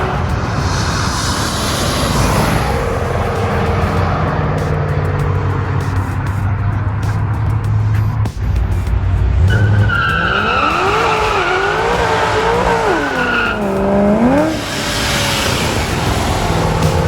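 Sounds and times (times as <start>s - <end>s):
car engine revving: 0.0s - 17.0s
tyres squealing: 0.0s - 17.0s.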